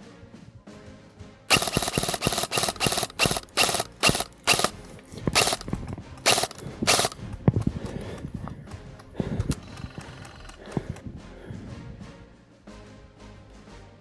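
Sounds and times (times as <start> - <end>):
airsoft rifle shots: 1.5 - 7.2.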